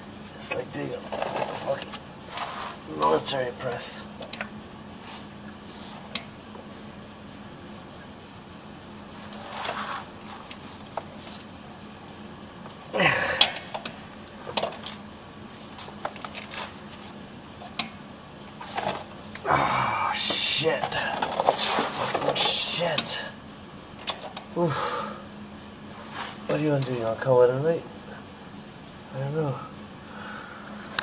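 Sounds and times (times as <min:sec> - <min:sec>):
person grunting: 0:12.9 - 0:13.6, 0:19.4 - 0:20.4
person breathing hard: 0:13.0 - 0:13.6, 0:24.6 - 0:25.3, 0:30.0 - 0:30.9.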